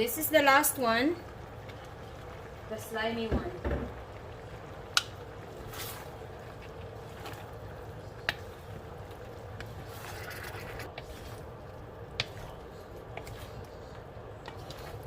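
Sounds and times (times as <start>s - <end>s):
vegetables cooking hiss: 0.0s - 15.0s
utensil clicking against pot: 4.9s - 5.2s.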